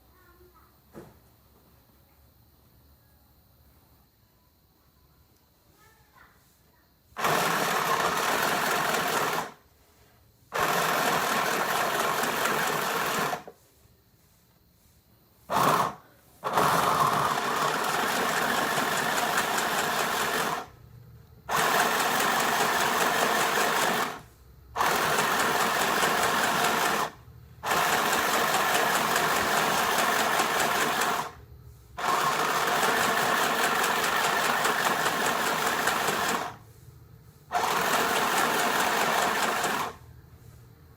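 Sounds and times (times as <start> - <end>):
electric sewing machine running: 7.2 - 9.6, 10.5 - 13.5, 15.5 - 20.8, 21.5 - 24.2, 24.8 - 31.4, 32.0 - 36.6, 37.5 - 40.0.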